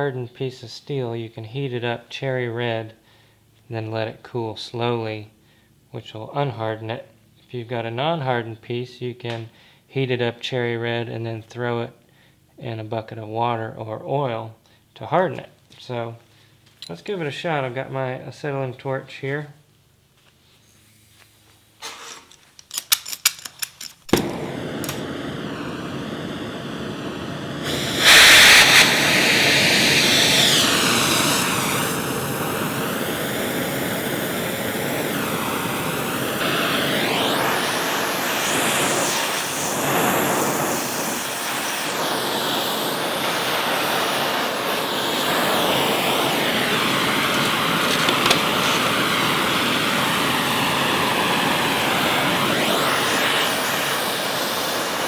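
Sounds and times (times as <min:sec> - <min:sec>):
torch igniter clicks: 0:21.8 - 0:32.8, 0:36.4 - 0:49.6
torch flame hissing: 0:24.0 - 0:55.0.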